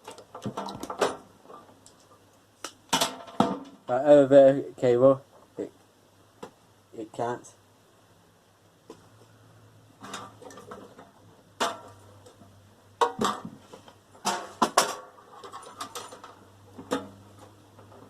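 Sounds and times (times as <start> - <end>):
metal parts clanking and rattling: 0.0 - 1.6, 2.9 - 3.7, 10.0 - 12.4, 14.2 - 17.2.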